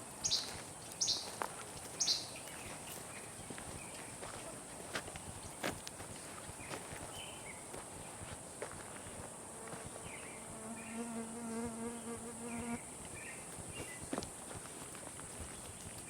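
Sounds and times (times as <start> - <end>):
insect buzzing: 9.4 - 14.2.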